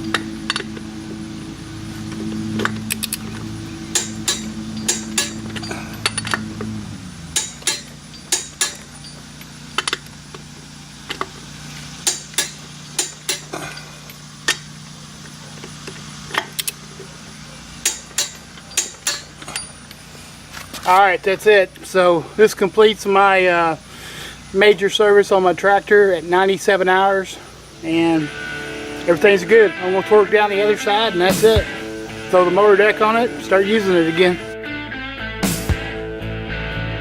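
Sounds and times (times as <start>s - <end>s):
low hum: 0.0s - 20.7s
torque wrench clicking: 2.6s - 6.7s, 7.4s - 11.4s, 12.0s - 16.8s, 17.8s - 20.0s.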